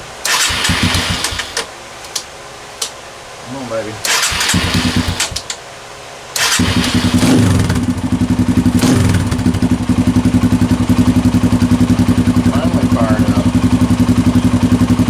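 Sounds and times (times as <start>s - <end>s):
motorcycle engine starting and idling: 0.0s - 1.7s, 4.0s - 5.6s, 6.3s - 15.0s.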